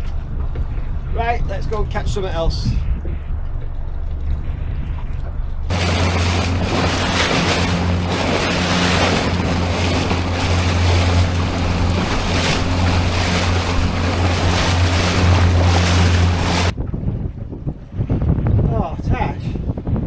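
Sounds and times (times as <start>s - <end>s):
wind buffeting microphone: 0.0s - 20.0s
outboard motor droning: 4.4s - 16.8s
water rushing past hull: 5.7s - 16.8s.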